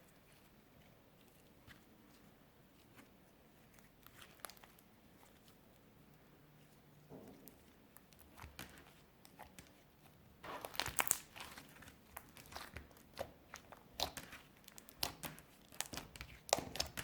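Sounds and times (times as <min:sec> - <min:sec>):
slime crackling and popping: 0:10.4 - 0:17.0.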